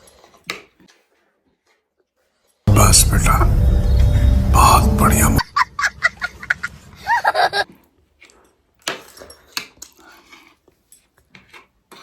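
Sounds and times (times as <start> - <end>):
short high whine: 2.7 - 7.1.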